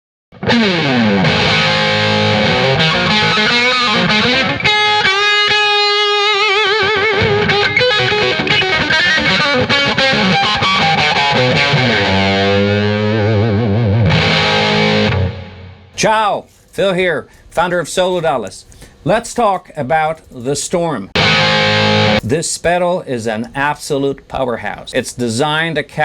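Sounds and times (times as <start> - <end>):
distorted electric guitar solo: 0.4 - 16.0, 21.2 - 22.3.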